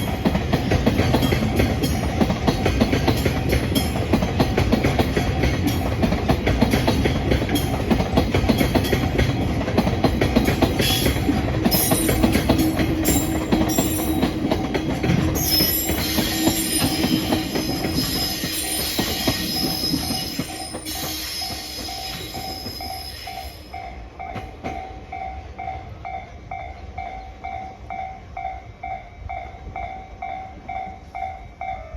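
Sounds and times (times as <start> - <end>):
train wheels clattering and squealing: 0.0 - 25.2
crossing warning bell ringing: 0.0 - 31.9.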